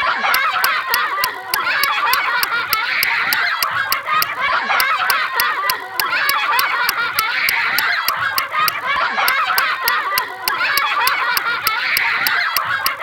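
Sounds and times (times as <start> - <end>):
steady ticking: 0.4 - 13.0.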